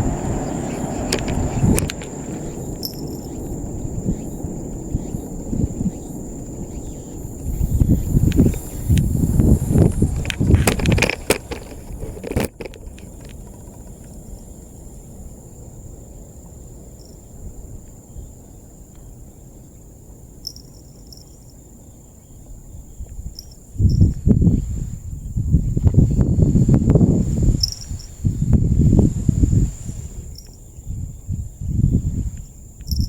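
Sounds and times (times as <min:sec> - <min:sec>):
loud low rumbling: 0:00.0 - 0:10.6
crickets trilling: 0:00.0 - 0:33.0.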